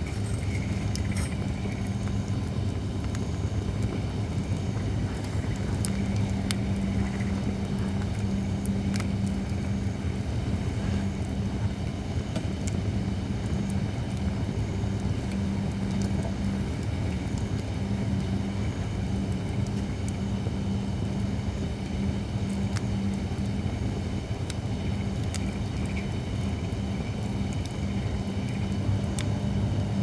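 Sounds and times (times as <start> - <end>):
campfire crackling and popping: 0.0 - 30.0
steady low hum: 0.0 - 30.0.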